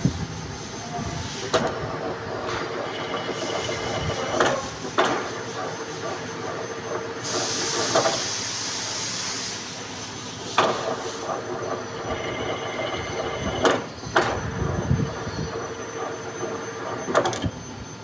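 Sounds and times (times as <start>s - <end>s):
metal lathe whining: 0.3s - 8.2s, 10.2s - 18.0s
burst of hiss: 7.2s - 10.2s.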